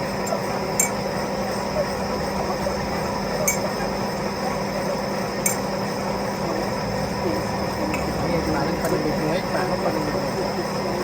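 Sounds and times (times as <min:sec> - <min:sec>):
lathe humming: 0:00.0 - 0:11.0
sharp metallic clinks: 0:00.3 - 0:01.2, 0:05.4 - 0:06.0.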